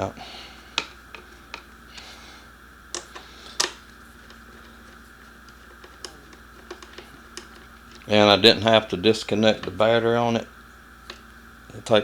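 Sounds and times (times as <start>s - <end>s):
faint steady hum: 0.0s - 12.0s
screwdriver and screws clicking: 2.9s - 8.8s.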